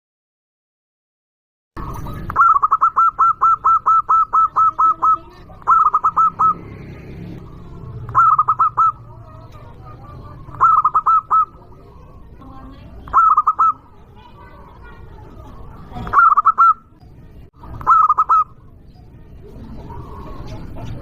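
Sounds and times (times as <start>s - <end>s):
dove staccato cooing: 1.8s - 14.1s, 15.5s - 17.0s, 17.6s - 18.8s, 19.4s - 21.0s.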